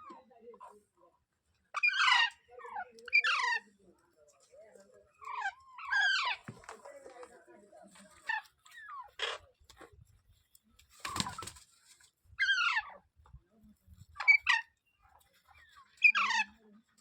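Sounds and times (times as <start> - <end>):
parrot squawking: 1.7 - 3.6.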